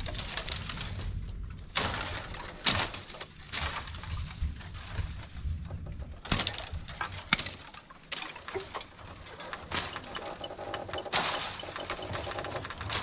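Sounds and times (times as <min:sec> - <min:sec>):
rustling leaves and branches: 0:00.0 - 0:13.0
bamboo cracking: 0:06.2 - 0:13.0.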